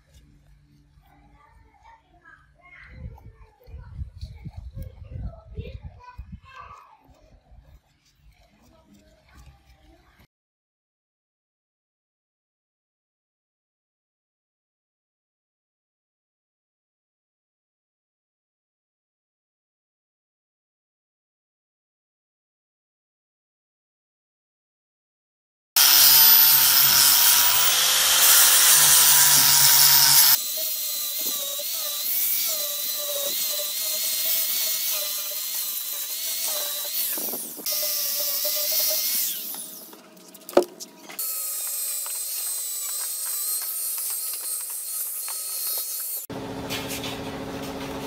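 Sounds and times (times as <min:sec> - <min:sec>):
power tool motor whining: 0:25.8 - 0:46.3.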